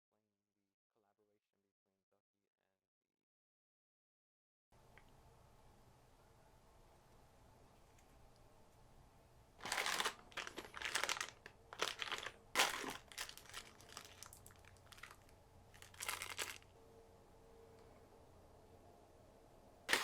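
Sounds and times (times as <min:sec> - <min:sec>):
packaging crinkling: 0:09.6 - 0:16.7.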